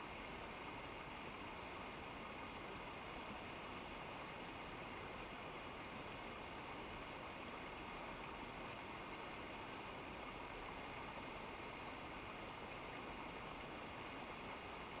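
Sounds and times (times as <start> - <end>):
stream water rushing: 0.0 - 15.0.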